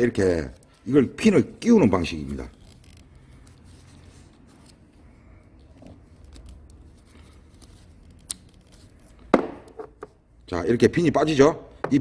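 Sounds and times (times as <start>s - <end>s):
faint handling noises: 2.0s - 10.2s.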